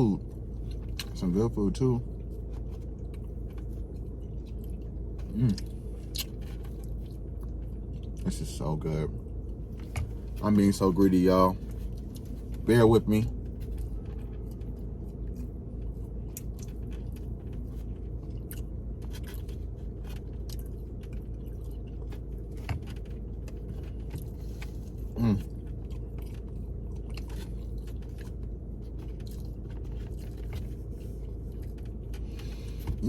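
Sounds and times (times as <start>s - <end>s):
low hum inside a car: 0.0s - 33.0s
person chewing food: 2.1s - 8.2s, 13.4s - 33.0s.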